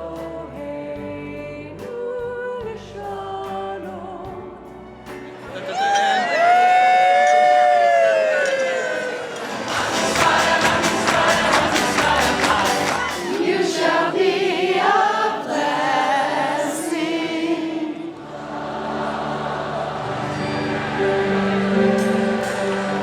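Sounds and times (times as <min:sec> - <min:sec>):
group of voices singing: 0:09.4 - 0:23.0
held chords: 0:18.2 - 0:23.0.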